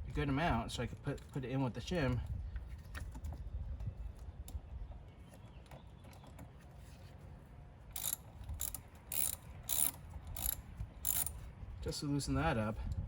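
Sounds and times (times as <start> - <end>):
ratchet wrench clicking: 8.0 - 11.4.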